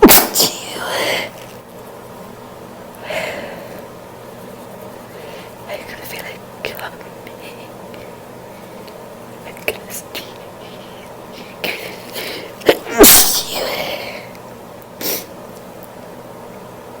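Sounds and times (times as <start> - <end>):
woman sneezing: 0.0 - 1.0, 12.7 - 14.0.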